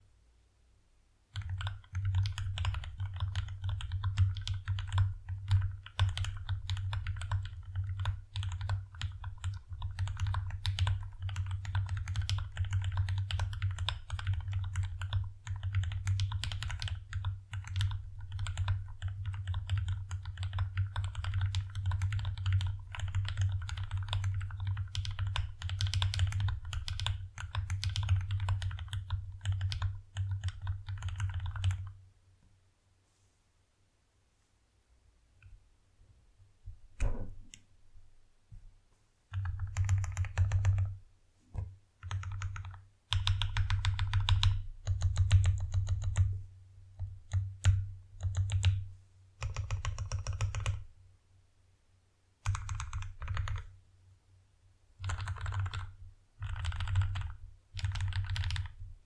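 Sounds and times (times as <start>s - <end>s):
mechanical keyboard typing: 1.4s - 31.9s, 39.3s - 40.9s, 42.0s - 46.3s, 47.3s - 48.8s, 49.4s - 50.8s, 52.4s - 53.7s, 55.0s - 58.8s.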